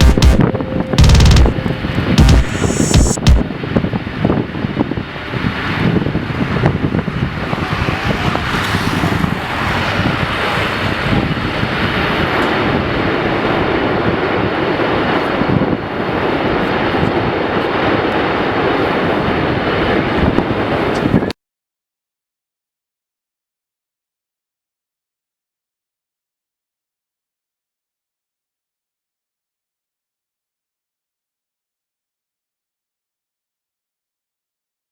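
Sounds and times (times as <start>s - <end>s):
jet engines rushing: 0.0s - 21.1s.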